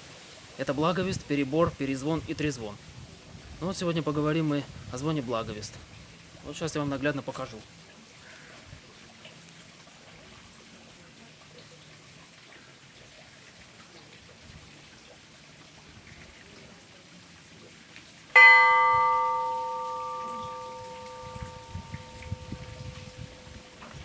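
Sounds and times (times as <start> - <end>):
church bell ringing: 18.4 - 24.0.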